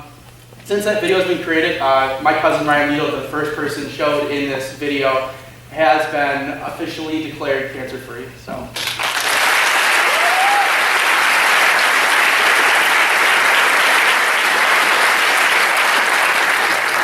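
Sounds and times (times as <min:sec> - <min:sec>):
audience applauding: 0:08.8 - 0:17.0
crowd cheering: 0:09.1 - 0:17.0.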